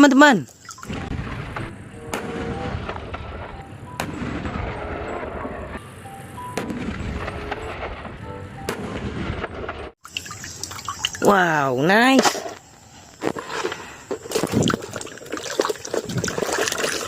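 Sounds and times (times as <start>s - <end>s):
gunfire-like bangs: 0.9s - 5.9s, 6.6s - 10.0s.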